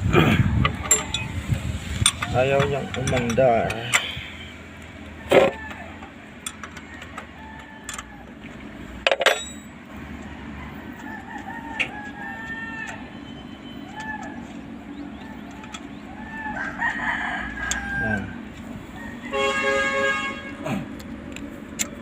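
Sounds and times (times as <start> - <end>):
chickens clucking: 10.0 - 19.4.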